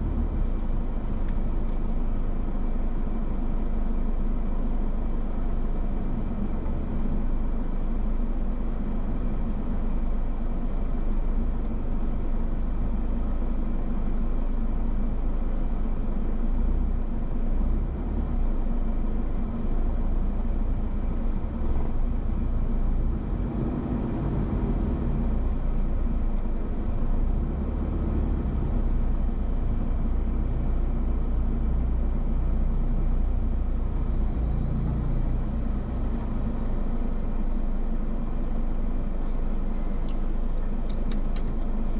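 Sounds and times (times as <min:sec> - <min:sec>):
steady low rumble: 0:18.4 - 0:41.9.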